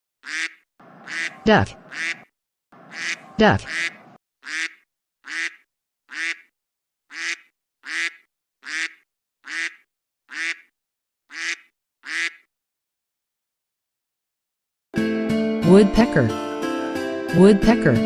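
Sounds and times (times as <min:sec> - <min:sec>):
duck quacking: 0:00.2 - 0:06.5, 0:07.1 - 0:10.7, 0:11.3 - 0:12.5.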